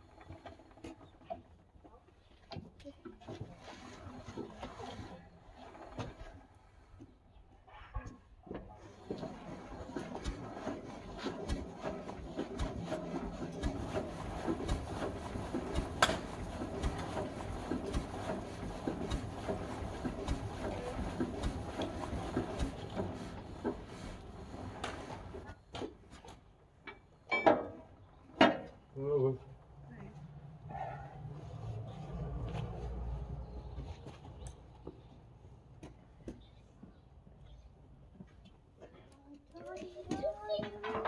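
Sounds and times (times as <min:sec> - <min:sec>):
old tractor engine clattering: 0:08.5 - 0:25.6, 0:40.1 - 0:41.0.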